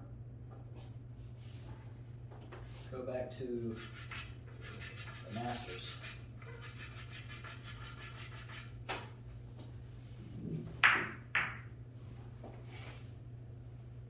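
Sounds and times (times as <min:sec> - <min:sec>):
chalk rasping on cue tip: 0:03.7 - 0:08.8
sharp clacks of pool balls: 0:10.8 - 0:11.7.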